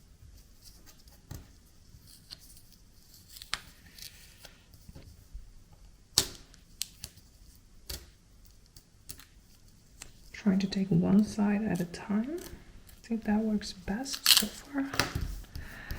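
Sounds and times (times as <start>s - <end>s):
tape peeling and tearing: 2.0s - 4.6s, 14.1s - 15.5s.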